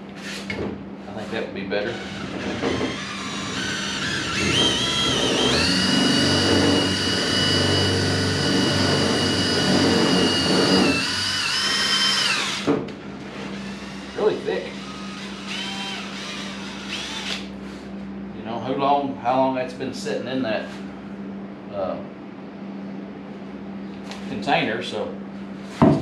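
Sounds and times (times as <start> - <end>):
electric drill whining: 1.9 - 12.7, 13.5 - 17.5.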